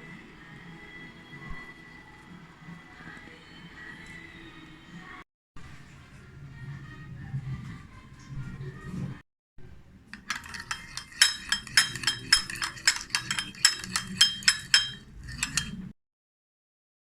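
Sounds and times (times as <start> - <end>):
spoon clinking against cup: 10.2 - 15.9.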